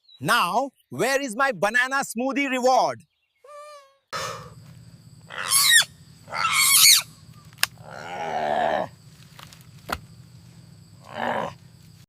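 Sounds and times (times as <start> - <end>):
shrill animal calls: 3.4 - 9.2, 10.8 - 11.7
low steady hum: 4.2 - 12.0
rough warbling call: 5.3 - 7.5.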